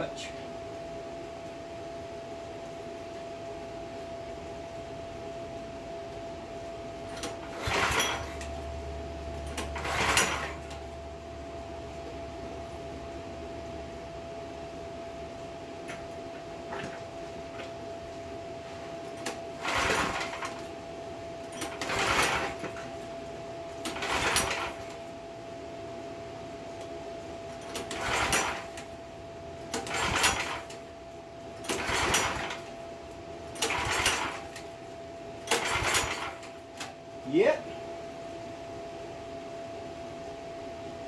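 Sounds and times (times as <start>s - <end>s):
recoil starter cranking whir: 7.0s - 11.1s, 15.8s - 17.7s, 18.6s - 20.8s, 21.4s - 25.2s, 27.5s - 37.0s.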